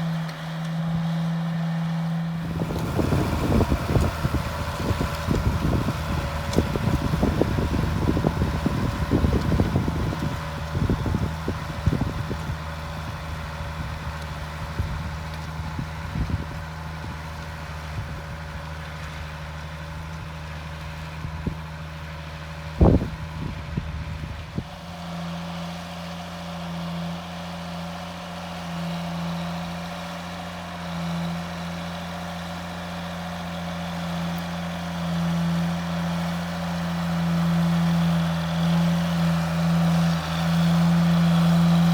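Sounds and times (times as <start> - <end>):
tractor diesel engine running: 0.0 - 41.9.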